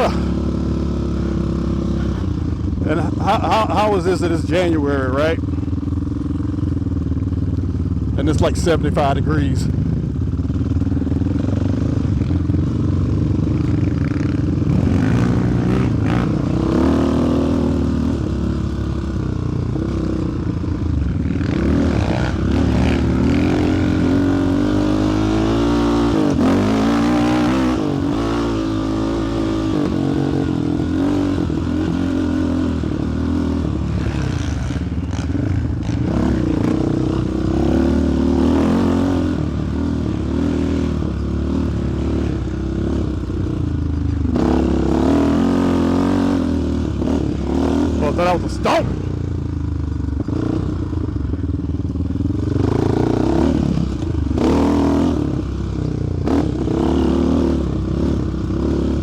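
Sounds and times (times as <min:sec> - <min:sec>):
quad engine revving: 0:00.0 - 0:05.4, 0:14.3 - 0:19.1, 0:21.2 - 0:43.5, 0:44.3 - 0:49.2, 0:52.4 - 0:59.0.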